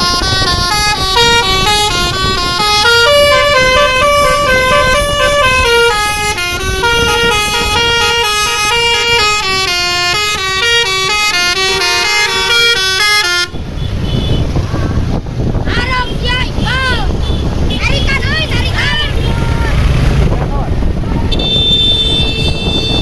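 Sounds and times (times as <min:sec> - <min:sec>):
multi-tone air horn melody: 0:00.0 - 0:14.5, 0:21.1 - 0:23.0.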